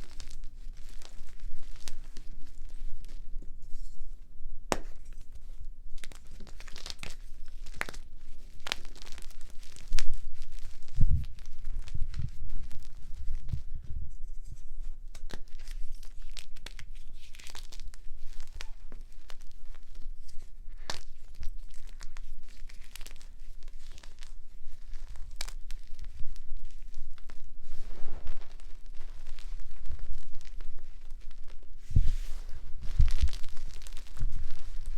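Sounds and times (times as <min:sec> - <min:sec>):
chalk crunching and crumbling: 0:00.0 - 0:04.0, 0:04.7 - 0:13.8, 0:14.4 - 0:34.9.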